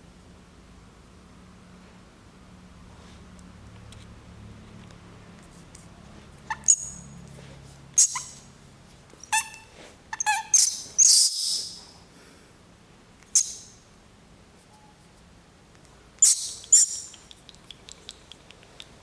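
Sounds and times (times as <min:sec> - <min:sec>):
small animal squeaking: 0:06.4 - 0:07.2, 0:08.0 - 0:08.5, 0:09.2 - 0:11.9, 0:13.3 - 0:13.8, 0:16.2 - 0:19.0.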